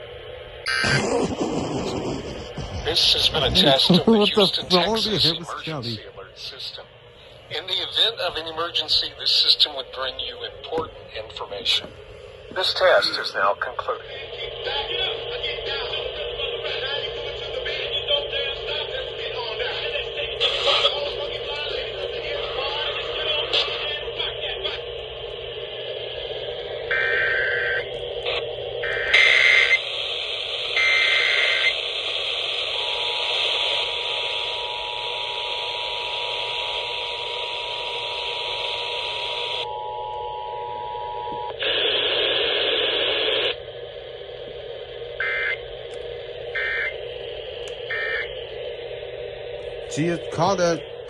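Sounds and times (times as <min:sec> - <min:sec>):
warbling data bursts: 0:00.7 - 0:06.6
radio static hiss: 0:00.7 - 0:26.9, 0:29.1 - 0:39.7, 0:41.4 - 0:51.0.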